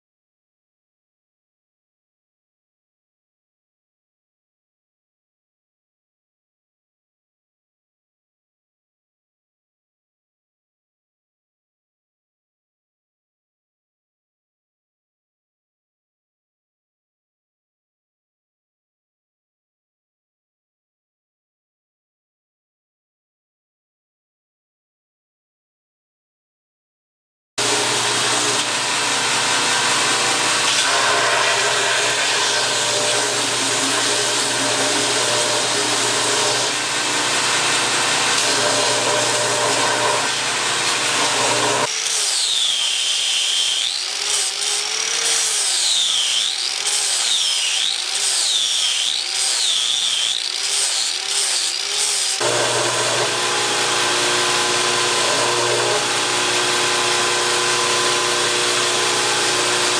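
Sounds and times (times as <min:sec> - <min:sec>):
electric power tool humming: 0:27.6 - 0:59.9.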